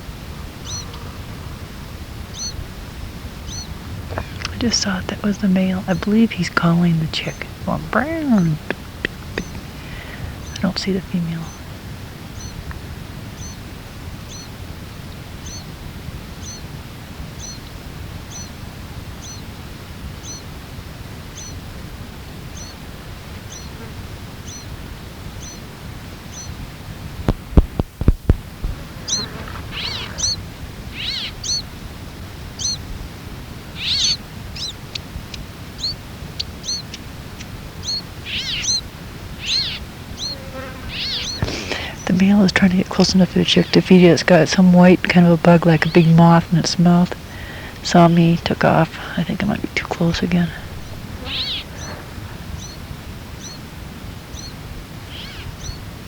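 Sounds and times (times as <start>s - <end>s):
bird chick high screechy calls: 2.3s - 2.6s, 28.9s - 31.7s, 32.6s - 32.8s, 33.8s - 34.8s, 35.8s - 37.0s, 37.8s - 38.8s, 39.4s - 42.0s, 50.8s - 52.8s, 54.4s - 55.8s.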